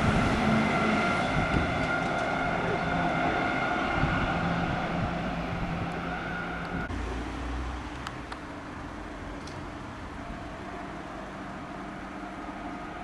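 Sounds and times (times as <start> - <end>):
fire engine running: 0.0 - 7.1, 7.8 - 13.0.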